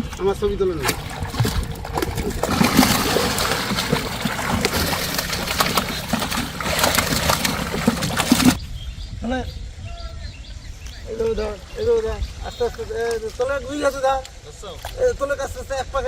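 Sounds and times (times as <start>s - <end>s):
water splashing and sloshing: 0.8s - 8.6s.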